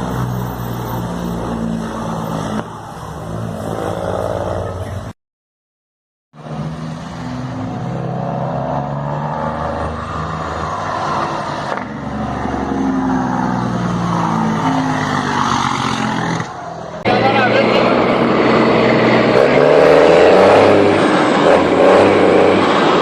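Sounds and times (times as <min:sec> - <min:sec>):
diesel truck engine droning: 0:06.7 - 0:23.0.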